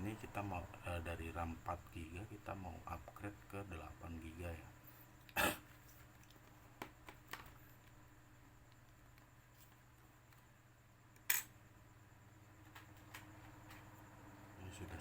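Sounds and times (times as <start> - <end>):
faint steady hum: 0.0 - 15.0
sharp clicks of small parts: 11.2 - 11.5.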